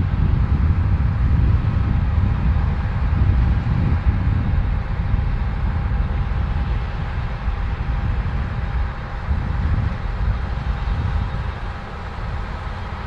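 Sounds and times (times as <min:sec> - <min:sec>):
combine harvester rumbling: 0:00.0 - 0:13.0.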